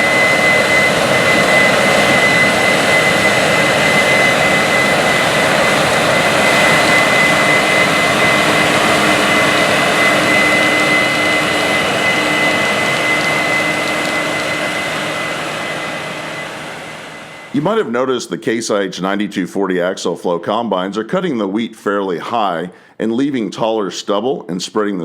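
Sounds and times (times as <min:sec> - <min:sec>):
combine harvester running: 0:00.0 - 0:17.6.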